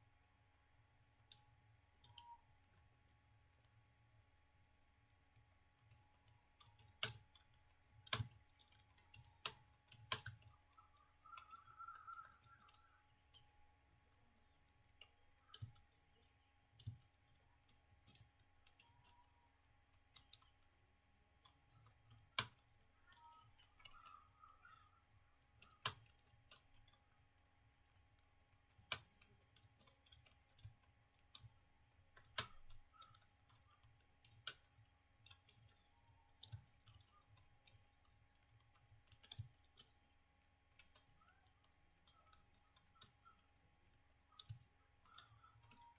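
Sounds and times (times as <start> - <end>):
computer keyboard key clicks: 27.9 - 40.0.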